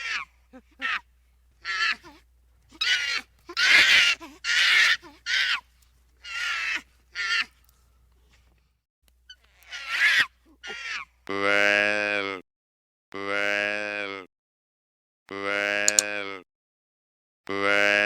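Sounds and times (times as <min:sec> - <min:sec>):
animal calling harshly: 0:01.6 - 0:05.6, 0:06.2 - 0:07.5, 0:09.4 - 0:11.6.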